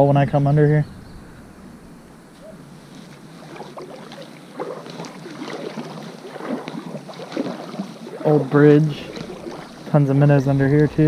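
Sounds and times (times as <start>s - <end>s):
paddle splashing in water: 2.4s - 11.0s
water dripping: 2.4s - 11.0s.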